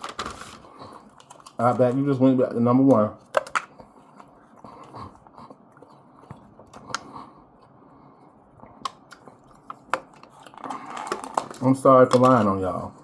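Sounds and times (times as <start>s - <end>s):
person chewing food: 3.3s - 11.4s.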